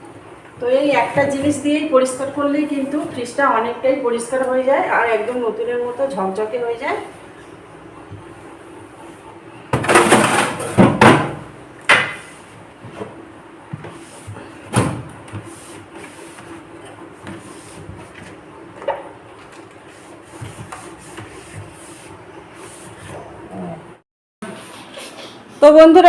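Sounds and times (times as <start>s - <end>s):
knocks on refrigerator: 9.7s - 12.2s, 14.7s - 15.1s.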